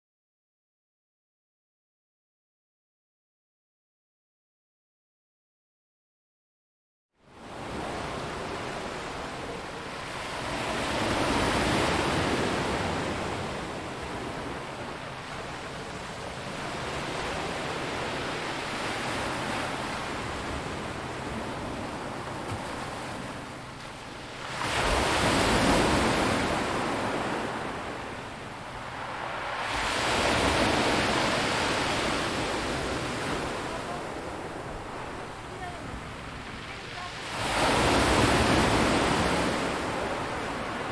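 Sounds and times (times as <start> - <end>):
sea waves breaking on rocks: 10.1 - 40.9.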